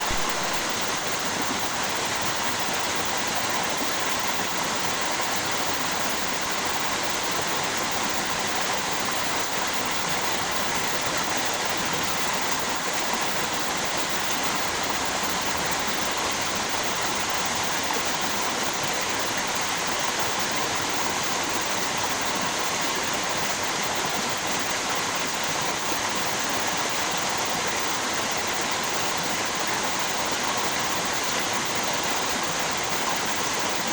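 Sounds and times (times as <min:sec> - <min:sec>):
river water rushing: 0:00.0 - 0:06.4.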